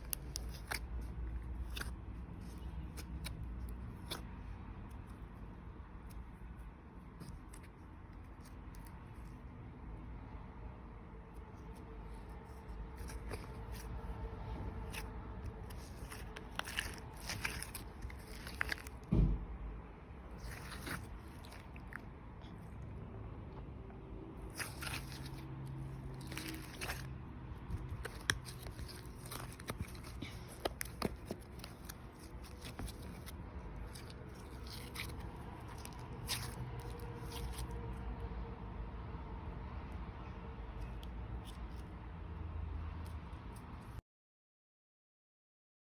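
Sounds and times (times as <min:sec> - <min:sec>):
slime clicks and crackles: 0:14.8 - 0:19.1, 0:20.3 - 0:22.0, 0:24.4 - 0:27.1, 0:27.8 - 0:37.8
dull thump: 0:19.0 - 0:19.6.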